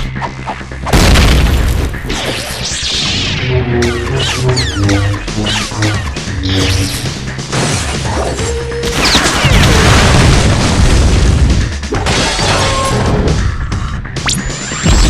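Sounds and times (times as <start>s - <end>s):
background music: 0.0s - 15.0s
fight sound effects: 3.0s - 9.8s.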